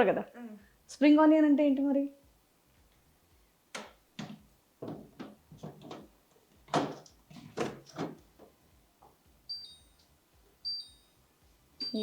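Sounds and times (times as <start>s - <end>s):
plastic containers clattering: 4.2s - 6.0s, 6.7s - 8.2s
fridge alarm beeps: 9.5s - 10.0s, 10.6s - 11.2s, 11.8s - 12.0s.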